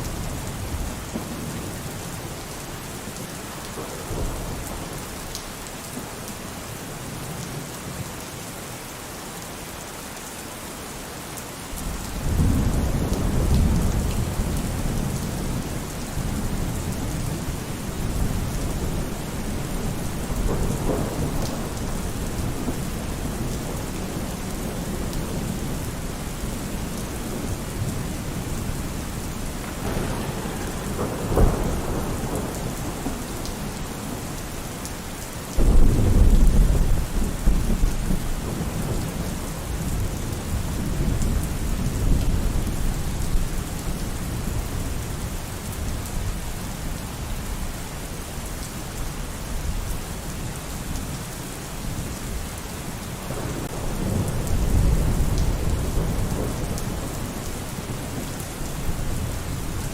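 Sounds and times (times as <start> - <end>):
heavy rain: 0.0 - 59.9
thunder rumbling: 11.8 - 34.9, 35.6 - 43.8, 53.2 - 59.9.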